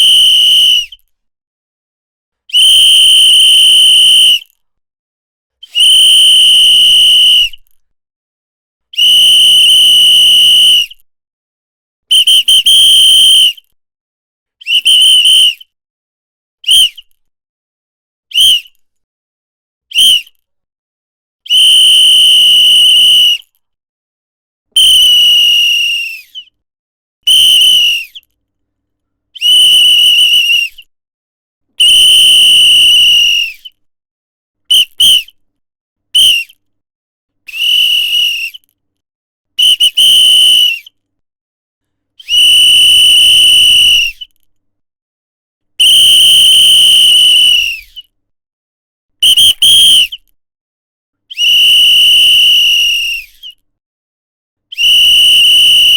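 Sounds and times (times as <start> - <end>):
whistle blasts: 0.0 - 1.0, 2.5 - 4.5, 5.6 - 7.6, 9.0 - 10.9, 12.1 - 13.6, 14.6 - 15.6, 18.3 - 18.7, 19.9 - 20.3, 21.5 - 23.5, 24.8 - 26.5, 27.3 - 28.2, 29.4 - 30.8, 31.8 - 33.7, 34.7 - 35.3, 36.2 - 36.5, 37.5 - 38.6, 39.6 - 40.9, 42.2 - 44.3, 45.8 - 48.0, 49.2 - 50.2, 51.3 - 53.4, 54.7 - 55.9.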